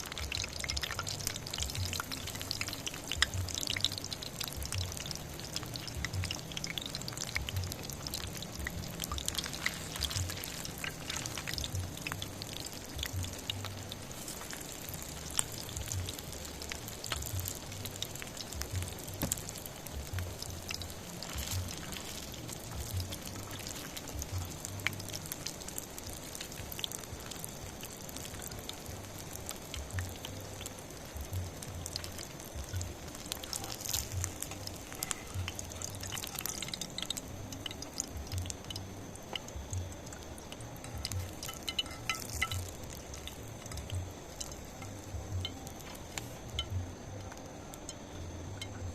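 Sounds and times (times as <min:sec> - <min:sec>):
raindrops ticking and dripping: 0:00.0 - 0:48.9
soft low thumps: 0:15.6 - 0:21.0, 0:31.1 - 0:33.1.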